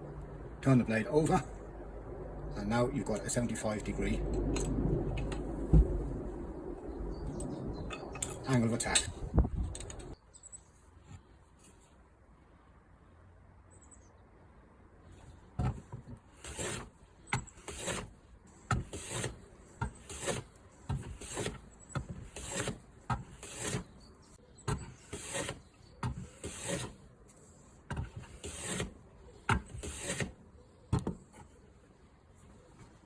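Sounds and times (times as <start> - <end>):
hand plane scraping along board: 15.6 - 24.0, 24.7 - 30.4.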